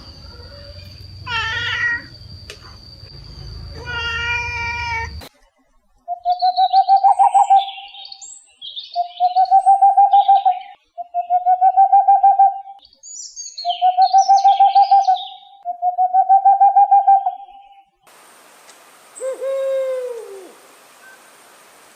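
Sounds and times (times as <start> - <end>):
bird chirps and twitters: 6.1 - 16.0.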